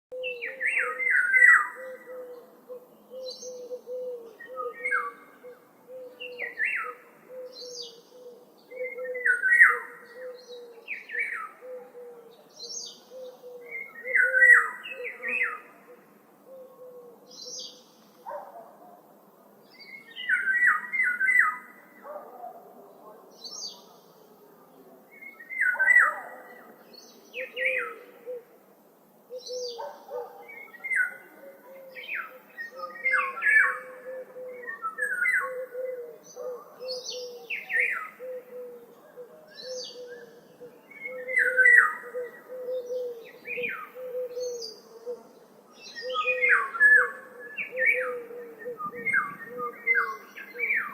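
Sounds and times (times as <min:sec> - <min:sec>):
songbirds chirping: 0:00.1 - 0:50.9.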